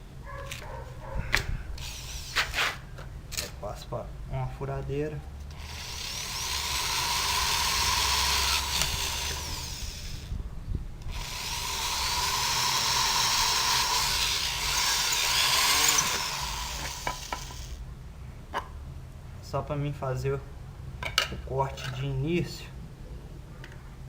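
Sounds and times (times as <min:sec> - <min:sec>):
electric drill boring hardboard: 0:01.8 - 0:02.6, 0:05.5 - 0:10.3, 0:11.1 - 0:17.8.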